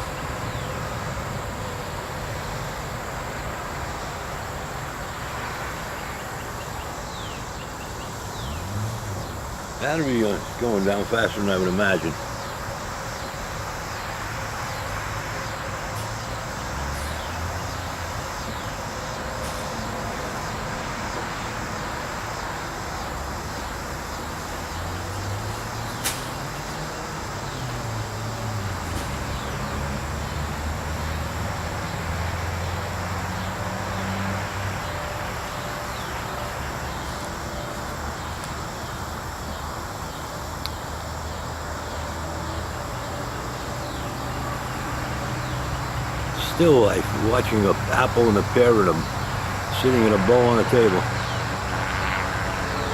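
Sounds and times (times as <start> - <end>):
insects chirping: 0.0 - 52.9
sharp click: 26.0 - 26.4.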